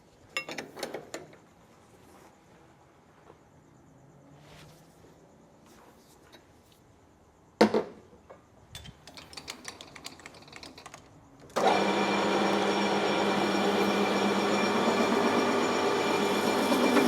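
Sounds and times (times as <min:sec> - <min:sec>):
tools clicking and rattling: 0:08.7 - 0:11.6
metal lathe humming: 0:11.6 - 0:17.0.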